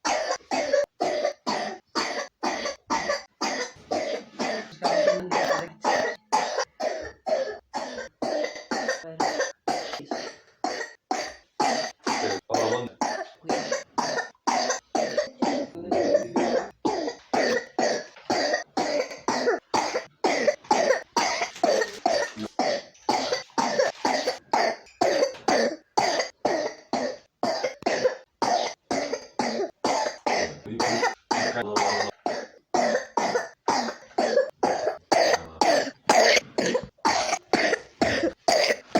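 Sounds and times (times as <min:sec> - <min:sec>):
child coughing: 0:00.0 - 0:38.9.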